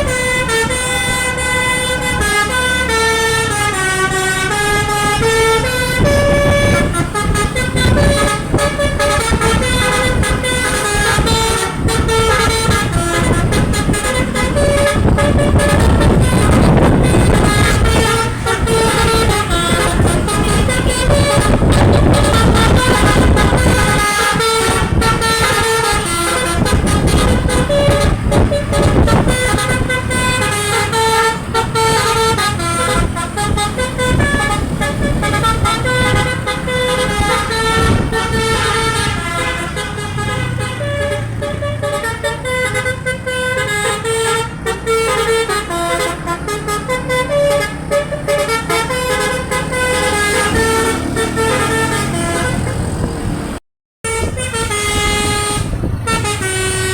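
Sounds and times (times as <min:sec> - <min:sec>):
multi-tone air horn tune: 0:00.0 - 0:53.0, 0:54.0 - 0:56.9.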